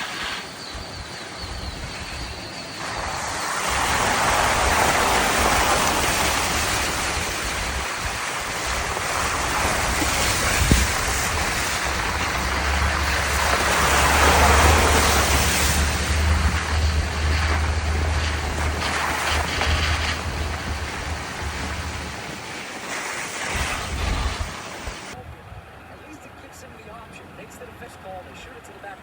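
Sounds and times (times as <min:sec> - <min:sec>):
wind rushing over microphone: 0:00.0 - 0:25.8.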